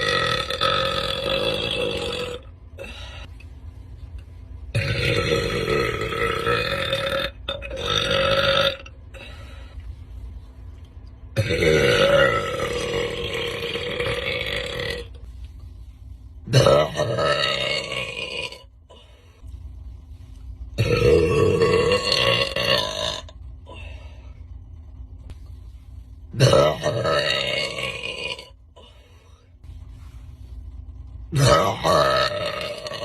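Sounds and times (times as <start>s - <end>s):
person burping loudly: 0.0s - 3.0s, 4.7s - 9.0s, 11.4s - 15.2s, 16.5s - 18.7s, 20.8s - 23.4s, 26.3s - 28.6s, 31.3s - 33.0s.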